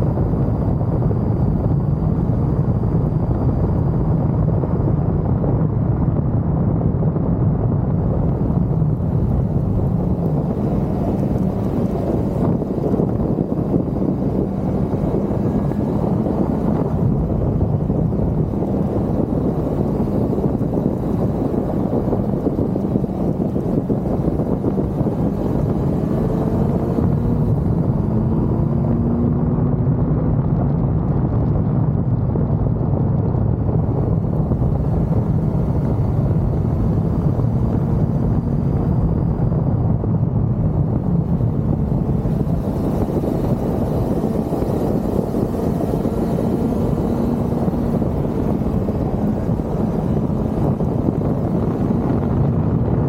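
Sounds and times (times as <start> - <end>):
motorcycle engine running: 0.0 - 53.0
road and wind noise: 0.0 - 53.0.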